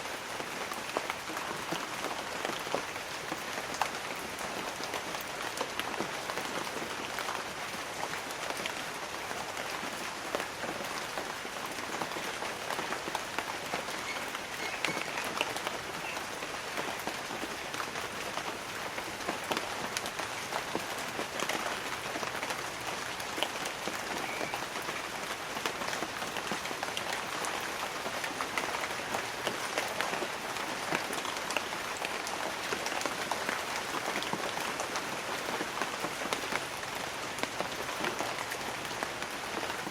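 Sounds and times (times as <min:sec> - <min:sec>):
light rain pattering on leaves: 0:00.0 - 0:39.9.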